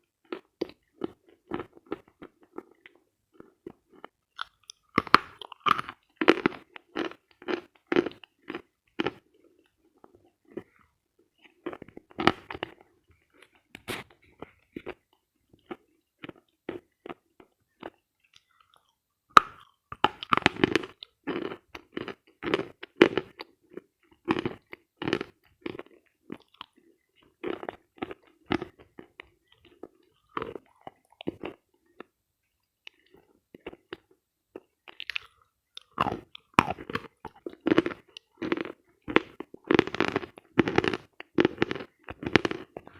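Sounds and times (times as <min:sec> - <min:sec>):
person crunching chalk: 0:13.8 - 0:14.2, 0:37.7 - 0:42.9.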